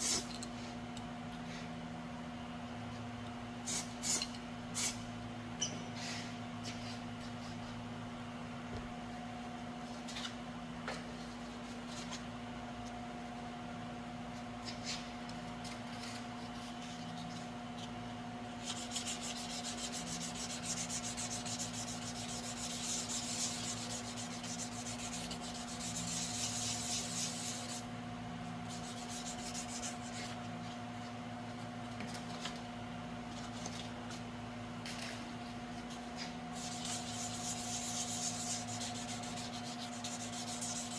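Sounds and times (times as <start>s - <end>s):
steady hum: 0.0s - 40.9s
sandpaper rubbing: 18.6s - 27.9s, 28.7s - 30.4s, 35.9s - 40.9s.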